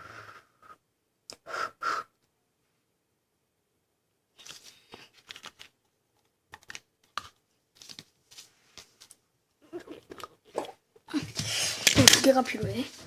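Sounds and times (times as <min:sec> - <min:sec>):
small objects clicking and tapping: 0:06.5 - 0:08.0.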